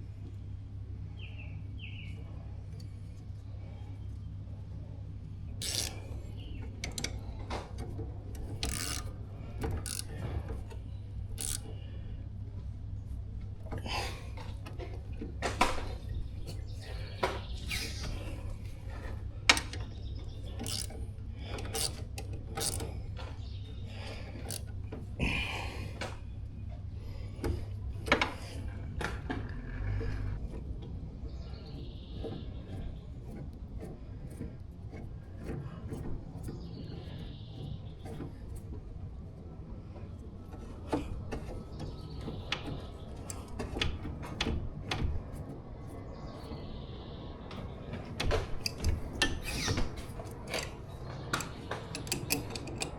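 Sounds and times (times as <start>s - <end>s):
low steady background rumble: 0.0s - 52.9s
ratchet clicking: 5.6s - 7.2s, 8.3s - 11.8s, 19.5s - 23.0s, 24.2s - 24.7s, 48.6s - 52.9s
hand tools clicking on metal: 5.6s - 7.4s, 8.3s - 11.8s, 19.5s - 26.2s, 48.6s - 52.9s.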